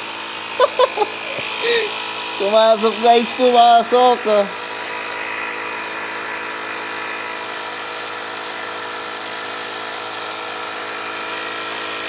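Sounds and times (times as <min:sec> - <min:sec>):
small electric motor humming: 0:00.0 - 0:12.0.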